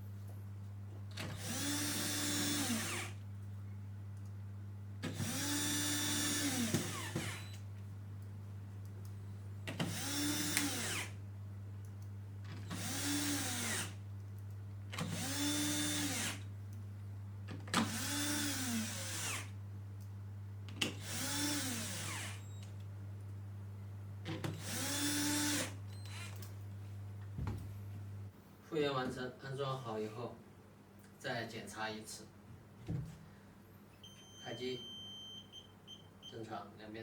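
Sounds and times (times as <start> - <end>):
cordless power driver running: 1.2 - 3.2, 5.0 - 7.6, 9.7 - 11.2, 12.6 - 14.0, 15.0 - 16.5, 17.7 - 19.6, 20.8 - 22.6, 24.5 - 26.5.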